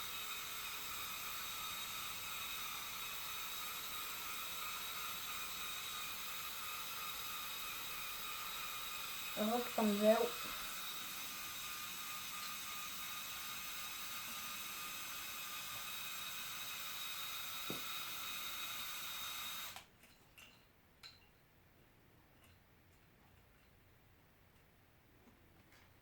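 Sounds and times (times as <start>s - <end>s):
small electric motor whining: 0.0s - 19.9s.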